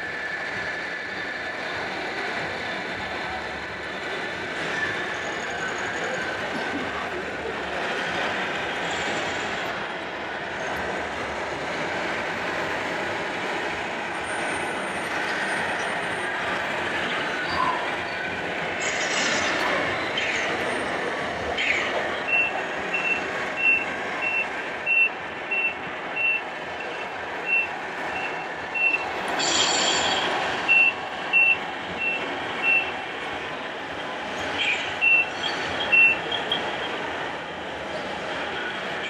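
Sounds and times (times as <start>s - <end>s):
hall noise: 0.0s - 39.0s
reversing warning beeps: 21.6s - 33.0s, 34.4s - 37.0s.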